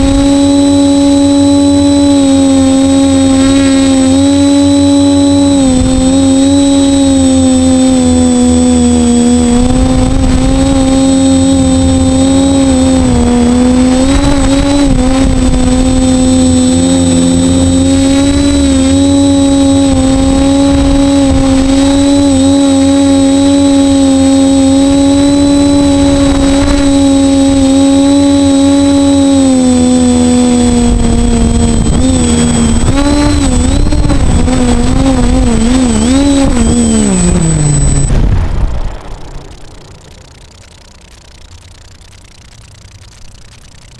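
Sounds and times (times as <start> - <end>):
drone motors whining: 0.0 - 43.9.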